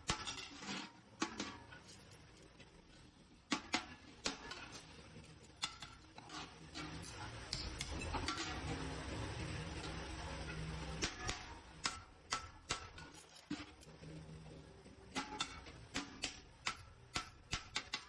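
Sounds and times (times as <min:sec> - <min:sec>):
hammer striking sheet metal: 0:11.0 - 0:13.1, 0:15.1 - 0:18.0.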